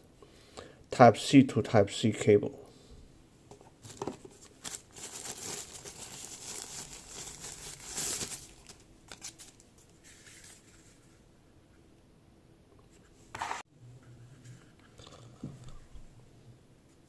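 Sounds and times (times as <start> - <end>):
plastic packaging crinkling: 3.8 - 10.7.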